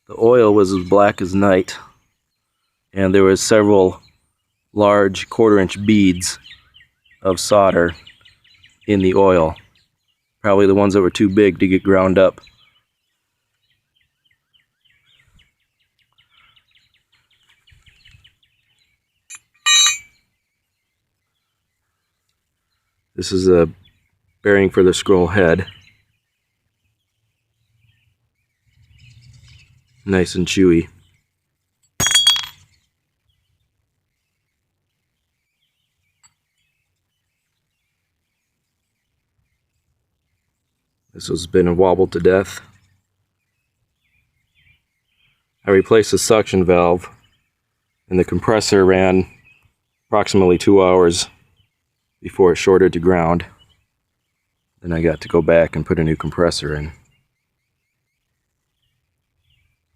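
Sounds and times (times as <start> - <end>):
faint bird chirps: 0.0 - 59.9
bright ringing metal clink: 19.3 - 20.2, 32.0 - 32.6.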